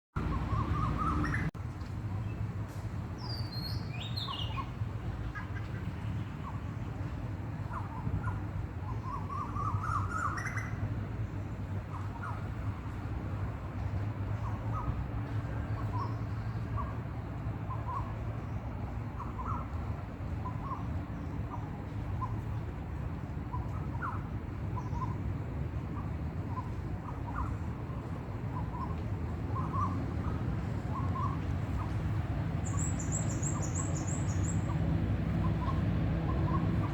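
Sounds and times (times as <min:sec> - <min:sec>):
bird chirps: 0:00.2 - 0:01.5, 0:32.6 - 0:34.8.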